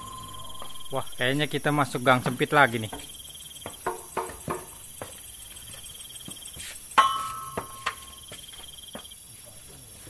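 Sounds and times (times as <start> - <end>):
sharp metallic clink: 0.0 - 3.0, 7.0 - 8.2
crickets chirping: 0.0 - 10.0.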